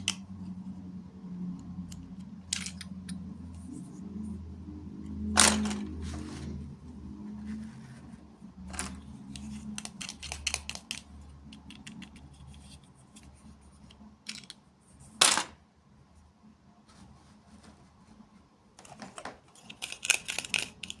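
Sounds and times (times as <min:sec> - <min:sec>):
plastic toy pieces clicking: 0:01.9 - 0:03.2, 0:08.8 - 0:12.7, 0:14.3 - 0:14.6, 0:18.8 - 0:21.0.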